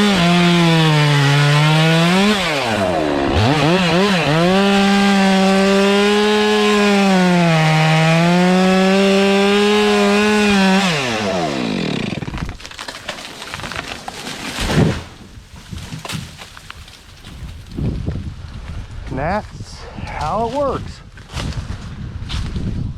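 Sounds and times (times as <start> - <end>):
chainsaw cutting: 0.0 - 15.2
tree cracking: 0.0 - 17.8
tree falling thump: 9.7 - 17.6.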